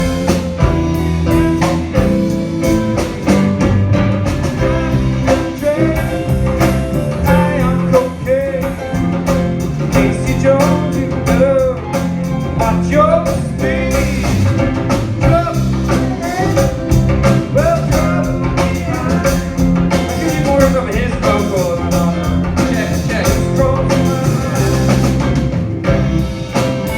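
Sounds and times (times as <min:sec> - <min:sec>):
drum kit: 0:00.0 - 0:26.9
guitar: 0:00.0 - 0:26.9
person singing: 0:04.6 - 0:25.4.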